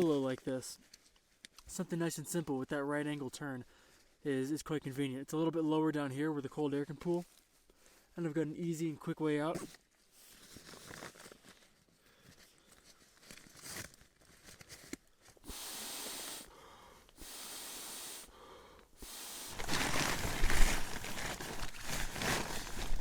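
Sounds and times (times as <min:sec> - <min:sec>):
steady hissing: 0:15.4 - 0:20.0
rustling of nylon sleeping gear: 0:19.0 - 0:23.0.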